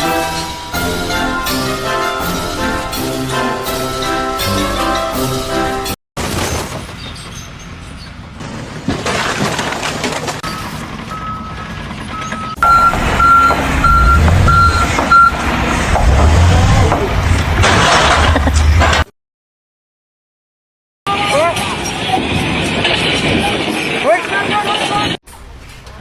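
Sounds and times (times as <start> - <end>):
heavy vehicle engine running: 0.0 - 17.7
reversing alarm beeping: 10.4 - 15.5.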